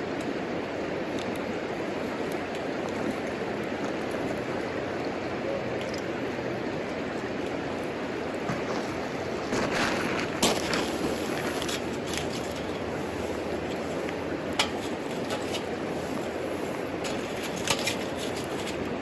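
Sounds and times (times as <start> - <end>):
wood fire crackling and popping: 7.5 - 19.0.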